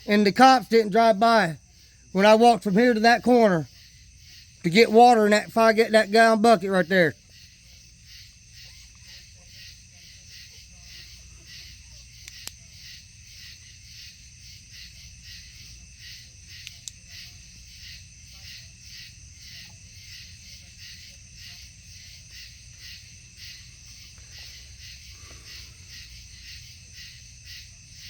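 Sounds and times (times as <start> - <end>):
insects chirping: 0.0 - 28.0
sharp clicks: 12.2 - 12.6, 16.6 - 17.0.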